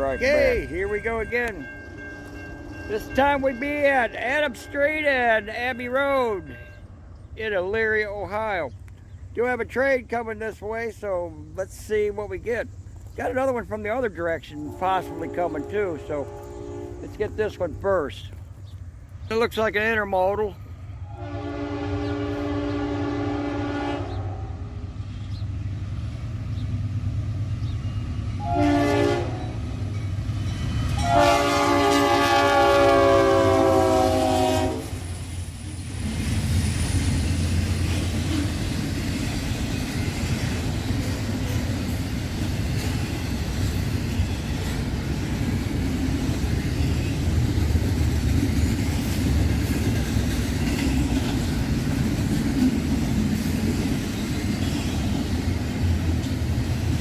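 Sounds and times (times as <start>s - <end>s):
train wheels rattling on rails: 0.0s - 23.4s, 25.0s - 57.0s
locomotive engine rumble: 0.0s - 57.0s
train horn blasts: 14.6s - 18.1s, 21.0s - 24.7s, 28.4s - 29.7s, 30.9s - 35.2s, 54.6s - 55.2s.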